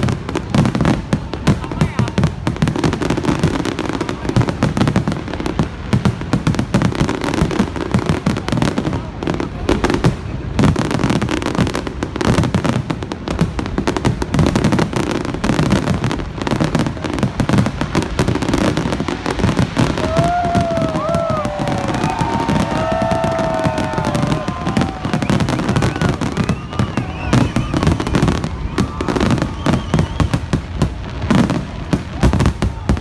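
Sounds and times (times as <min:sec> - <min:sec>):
fireworks bangs and crackling: 0:00.0 - 0:33.0
fireworks whistling: 0:17.5 - 0:33.0.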